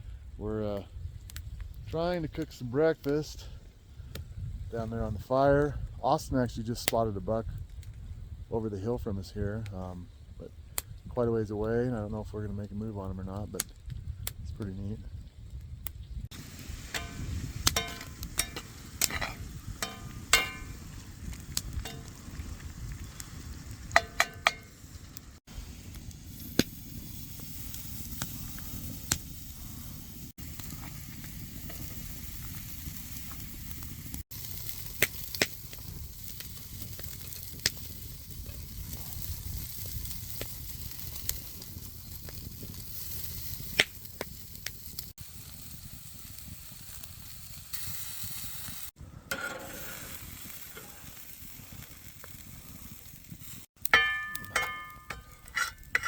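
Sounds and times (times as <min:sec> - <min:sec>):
food sizzling in a pan: 0:16.3 - 0:56.0
metal utensil clinking on pan: 0:16.9 - 0:20.8, 0:21.8 - 0:22.2, 0:24.0 - 0:24.7, 0:49.3 - 0:50.0, 0:53.9 - 0:56.0.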